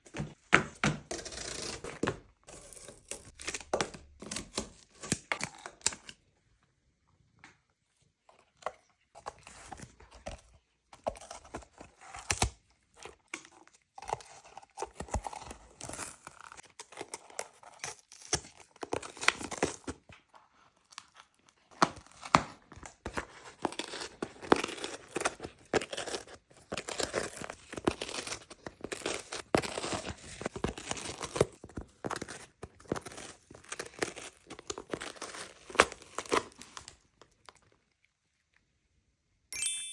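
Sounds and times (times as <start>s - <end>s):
cat tearing cardboard: 21.7s - 37.0s.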